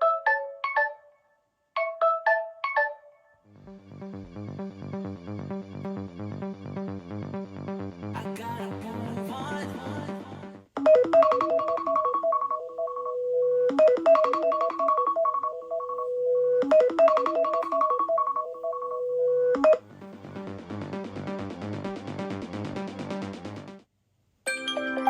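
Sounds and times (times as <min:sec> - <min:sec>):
phone alarm melody: 0:01.8 - 0:03.2, 0:10.8 - 0:19.8.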